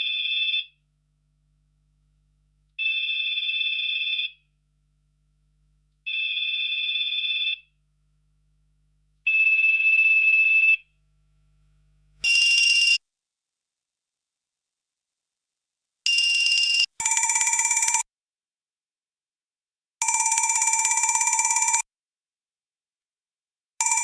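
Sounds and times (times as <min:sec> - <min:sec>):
electronic telephone ringing: 0:12.2 - 0:13.0, 0:16.1 - 0:18.0.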